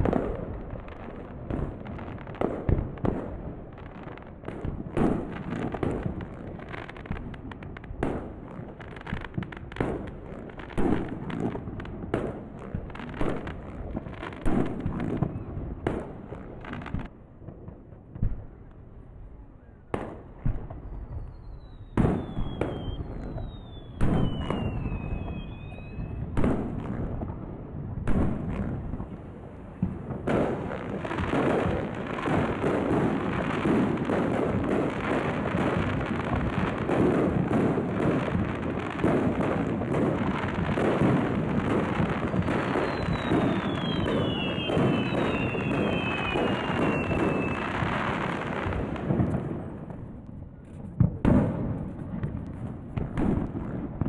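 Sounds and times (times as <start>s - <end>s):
fireworks bangs and crackle: 0.0s - 54.0s
fireworks whistles falling in pitch: 20.7s - 26.4s, 42.3s - 48.8s.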